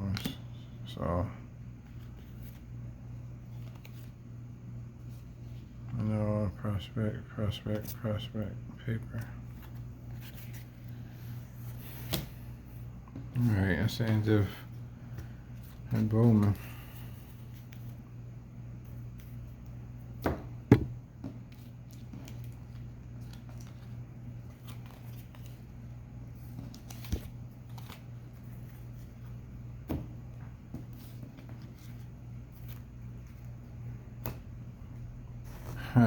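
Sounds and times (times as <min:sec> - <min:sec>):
steady low hum: 0:00.0 - 0:36.0
cards rustling: 0:03.4 - 0:04.2, 0:09.0 - 0:12.4, 0:13.4 - 0:18.0, 0:21.3 - 0:34.4.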